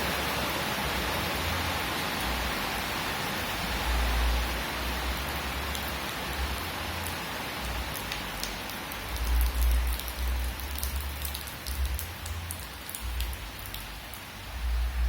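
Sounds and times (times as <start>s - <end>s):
steady rain with drop ticks: 0.0s - 15.0s
low rumble: 14.5s - 15.0s.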